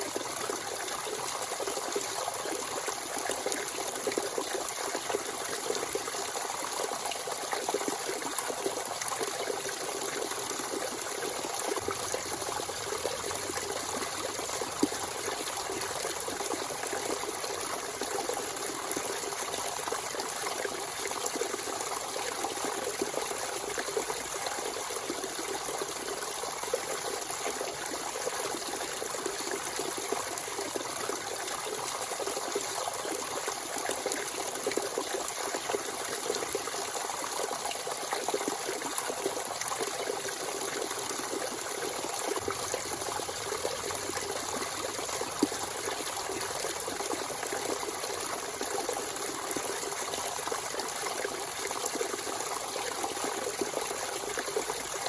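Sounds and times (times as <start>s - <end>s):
spring water trickling: 8.5s - 22.1s, 38.4s - 55.0s.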